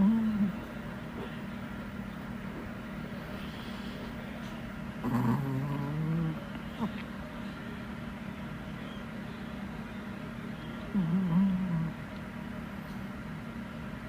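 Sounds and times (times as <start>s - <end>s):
steady low hum: 0.0s - 14.0s
small dog snoring: 5.0s - 7.0s, 10.9s - 12.0s.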